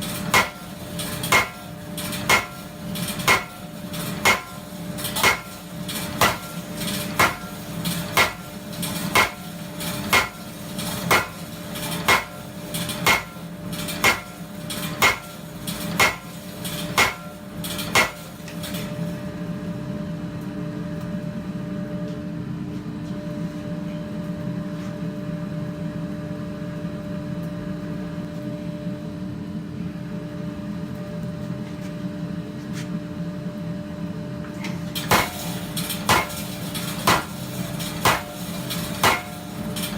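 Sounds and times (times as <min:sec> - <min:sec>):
power hammer striking hot steel: 0:00.0 - 0:19.0, 0:35.0 - 0:39.9
steady mechanical hum: 0:00.0 - 0:39.9.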